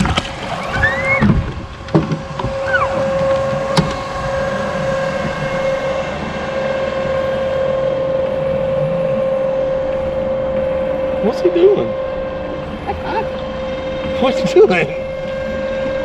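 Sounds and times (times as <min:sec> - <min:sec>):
electric outboard motor whine: 0:00.0 - 0:16.0
hull and water noise: 0:00.0 - 0:16.0
short squeaks: 0:12.6 - 0:14.2, 0:14.9 - 0:15.8.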